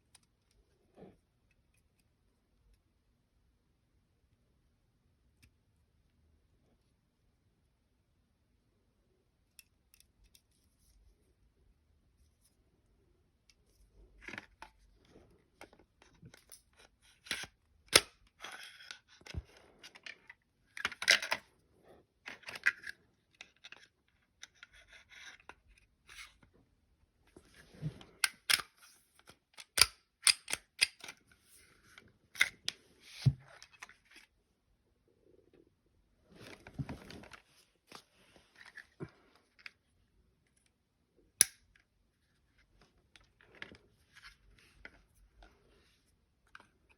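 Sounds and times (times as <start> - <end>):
clicks and knocks of gun parts: 27.8 - 31.2.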